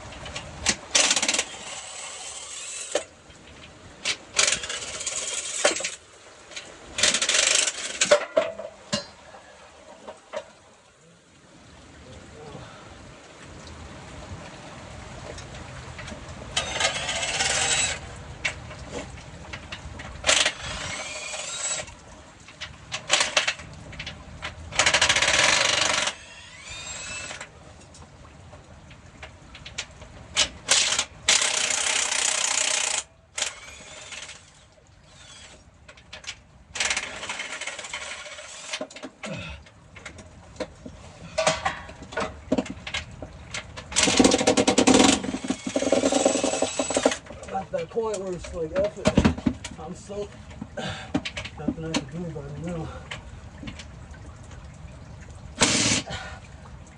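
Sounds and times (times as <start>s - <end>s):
impact wrench whining: 1.0s - 3.0s, 16.6s - 18.0s, 20.3s - 21.9s, 24.8s - 27.4s, 44.0s - 47.2s, 55.6s - 56.1s.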